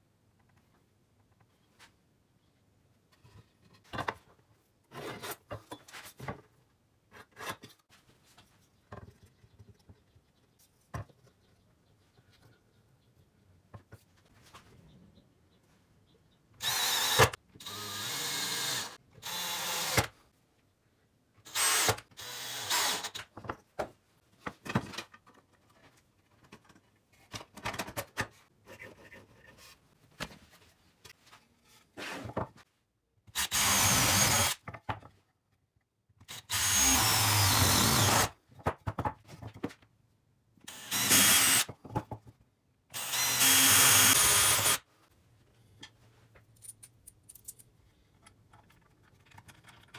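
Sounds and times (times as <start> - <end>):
power drill running: 16.6 - 20.0, 21.5 - 23.1, 33.4 - 34.5, 36.4 - 38.3, 40.7 - 41.6, 43.0 - 44.8.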